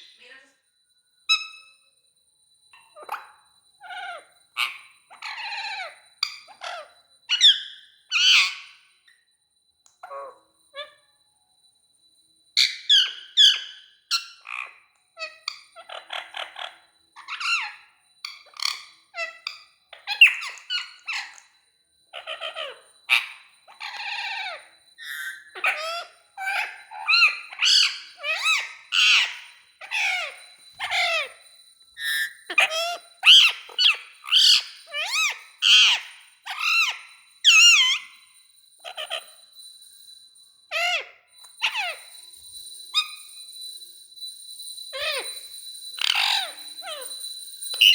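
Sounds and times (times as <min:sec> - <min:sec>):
parrot squawking and chirping: 0:02.8 - 0:08.9, 0:12.6 - 0:21.5, 0:22.1 - 0:31.4, 0:32.0 - 0:39.3, 0:40.7 - 0:42.2, 0:42.9 - 0:43.2, 0:44.9 - 0:47.9.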